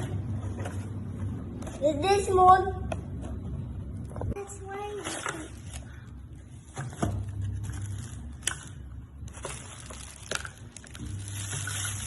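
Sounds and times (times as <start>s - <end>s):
box packaging crinkling and rustling: 6.9s - 12.0s.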